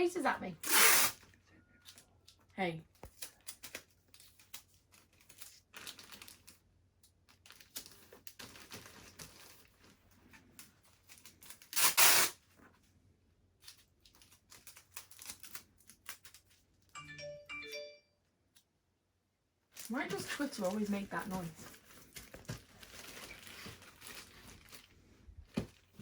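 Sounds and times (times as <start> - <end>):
sticky tape pulled and torn: 0.6 - 1.3, 11.4 - 12.4
plastic bag crinkling: 3.1 - 11.8, 13.6 - 16.6, 19.7 - 26.0.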